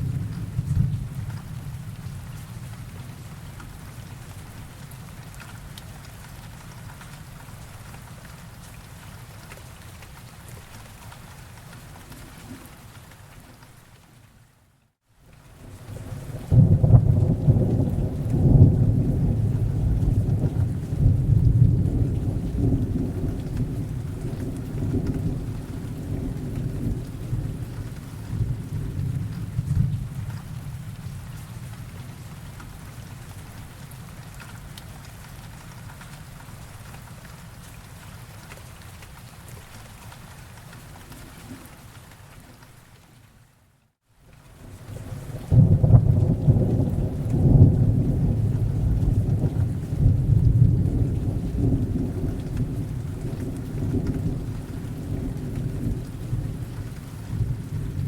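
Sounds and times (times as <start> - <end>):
rolling thunder: 0.0 - 2.3, 16.0 - 31.3, 45.4 - 58.0
steady rain: 0.0 - 58.0.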